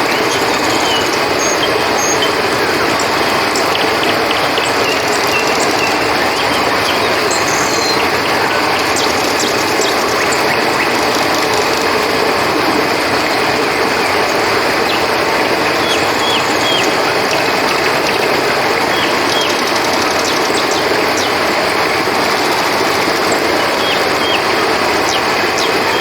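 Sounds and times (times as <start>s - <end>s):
crickets chirring: 0.0s - 26.0s
river rushing: 0.0s - 26.0s.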